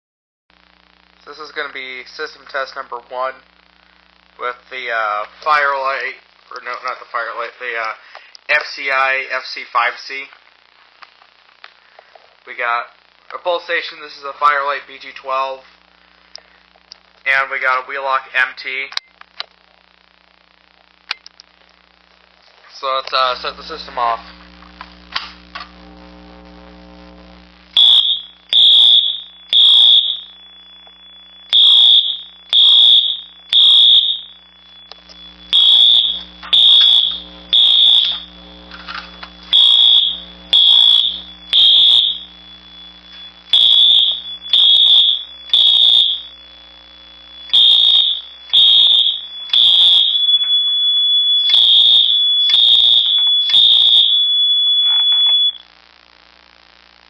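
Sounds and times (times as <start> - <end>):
fire alarm horn blasts: 27.8 - 38.3, 39.4 - 42.3, 42.9 - 46.5, 47.2 - 55.6
steady high alarm tone: 27.8 - 55.6.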